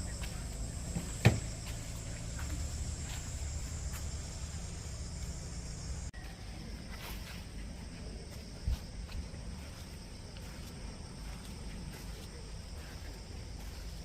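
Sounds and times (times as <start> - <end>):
insects singing: 0.0 - 14.0
sharp thump: 1.0 - 1.6.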